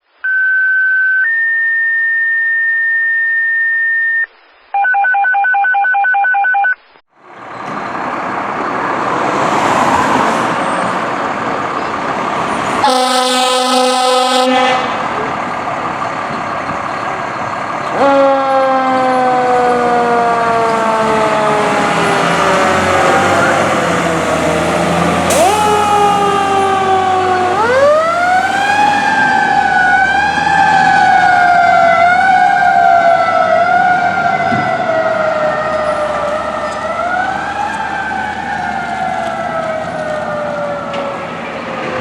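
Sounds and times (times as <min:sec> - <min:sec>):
dispatch alert tones: 0:00.2 - 0:07.0
fire engine running: 0:07.1 - 0:42.0
air horn blast: 0:12.8 - 0:15.3
mechanical siren falling pitch: 0:17.9 - 0:41.2.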